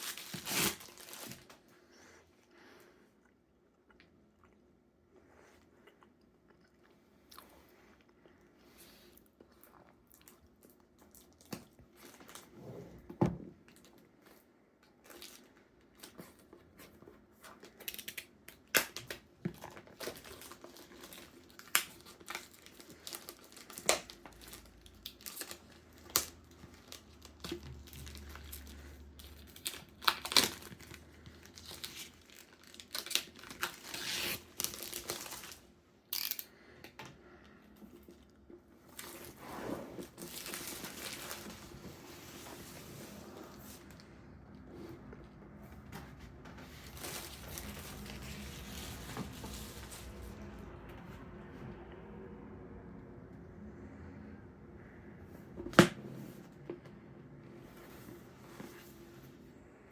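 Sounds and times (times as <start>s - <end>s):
plastic crinkling and tearing: 0.0s - 1.7s, 17.5s - 36.5s, 40.0s - 44.0s, 46.7s - 50.4s.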